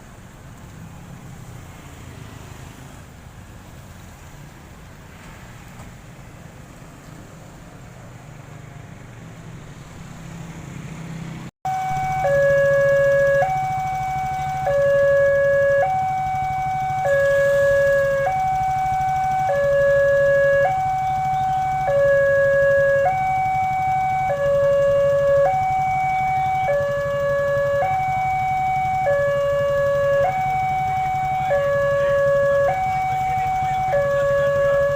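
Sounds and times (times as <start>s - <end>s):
two-tone level crossing siren: 11.7s - 34.9s.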